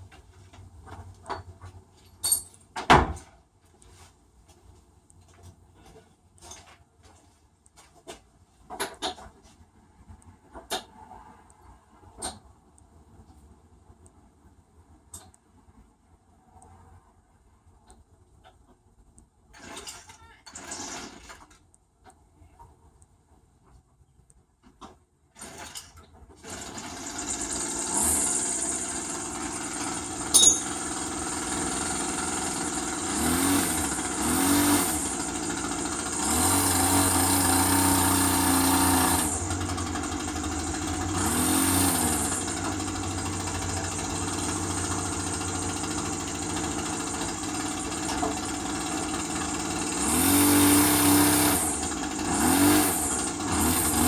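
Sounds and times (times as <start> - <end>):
lawn mower engine revving: 19.6 - 21.4, 26.4 - 54.0.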